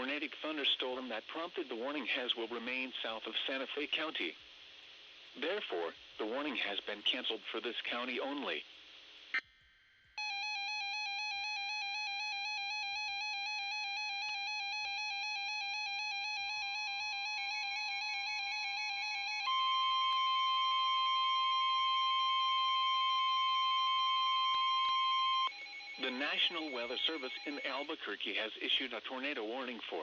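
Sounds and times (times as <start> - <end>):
steady weather radio alarm tone: 10.2 - 29.4.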